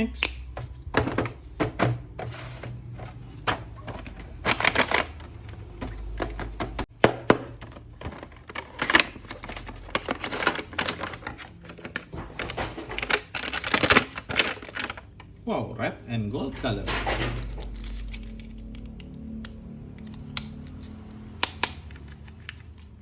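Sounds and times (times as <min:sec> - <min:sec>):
packaging rustling: 0:02.2 - 0:15.2, 0:17.2 - 0:18.8.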